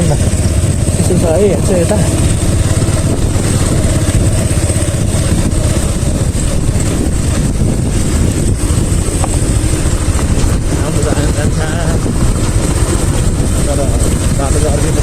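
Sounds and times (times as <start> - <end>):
motorcycle engine running: 0.0 - 15.0
road noise: 0.0 - 15.0.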